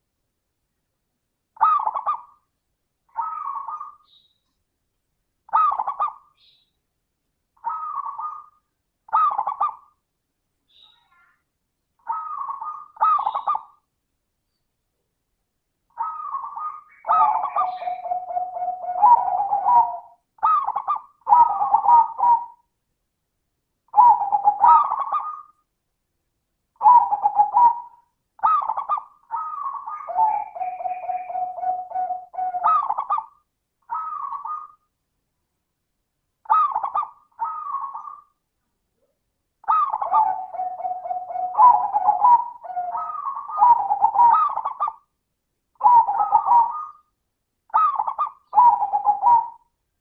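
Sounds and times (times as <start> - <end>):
dove cooing: 1.6 - 2.4, 9.1 - 9.9, 16.0 - 22.7, 23.9 - 25.5, 26.8 - 34.8, 36.5 - 38.3, 39.6 - 45.1, 45.8 - 47.1, 47.7 - 49.7.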